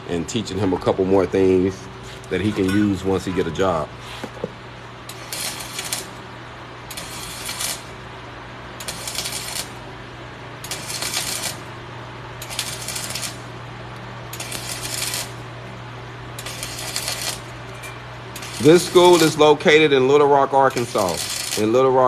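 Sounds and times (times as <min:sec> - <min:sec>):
welder low hum: 0:00.0 - 0:22.0
crackling welding arc bursts: 0:05.1 - 0:08.0, 0:08.8 - 0:09.8, 0:10.6 - 0:11.7, 0:12.4 - 0:13.5, 0:14.3 - 0:15.4, 0:16.4 - 0:17.5, 0:18.3 - 0:22.0.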